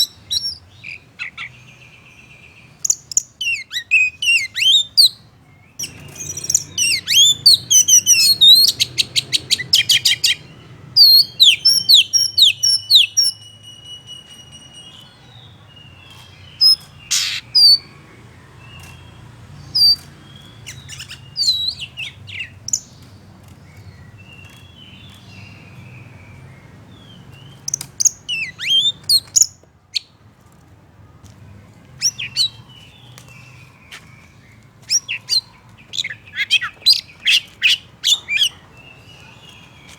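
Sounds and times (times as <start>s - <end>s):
bird chirping and whistling: 0.0s - 1.5s, 2.8s - 5.2s, 5.8s - 15.1s, 16.1s - 17.9s, 19.7s - 22.9s, 27.6s - 30.1s, 32.0s - 32.6s, 34.9s - 38.6s.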